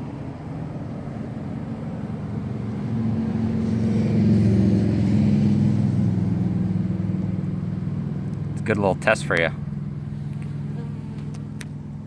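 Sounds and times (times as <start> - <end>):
honeybees buzzing: 9.6 - 12.0.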